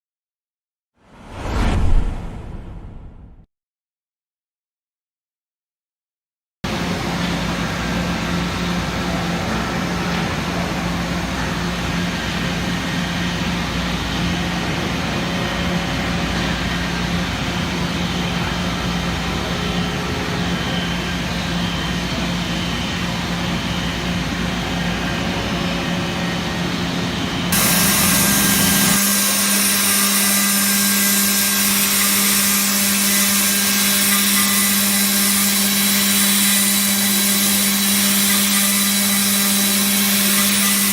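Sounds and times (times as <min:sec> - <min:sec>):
machine spindle hum: 0:06.8 - 0:40.9
cutter hissing in metal: 0:27.6 - 0:40.9.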